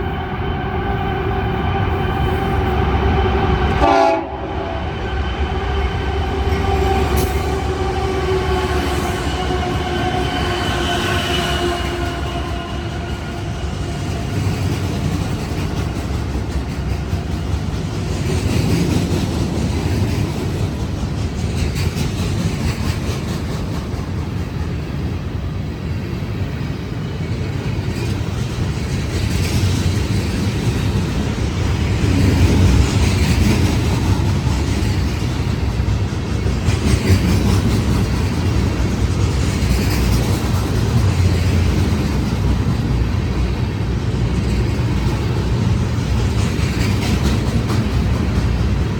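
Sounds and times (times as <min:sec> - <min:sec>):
train horn: 0:00.0 - 0:14.8
freight train wheels rumbling: 0:00.0 - 0:48.9.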